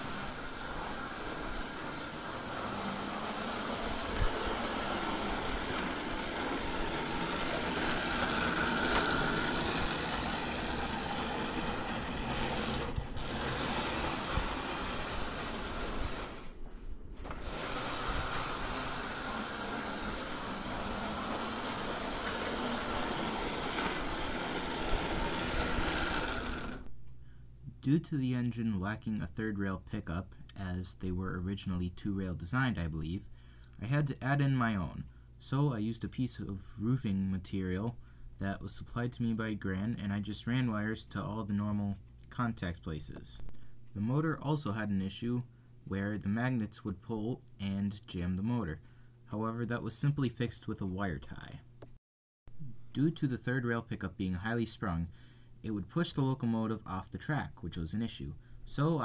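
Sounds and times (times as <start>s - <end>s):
wheels rattling on track: 0.0s - 16.3s
toy train motor whirring: 0.0s - 16.6s, 17.3s - 26.9s.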